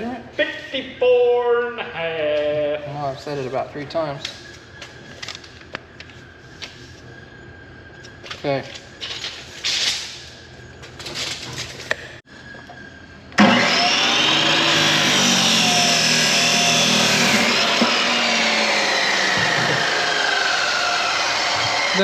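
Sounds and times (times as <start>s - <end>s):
cut-off saw cutting hose: 13.4s - 22.0s.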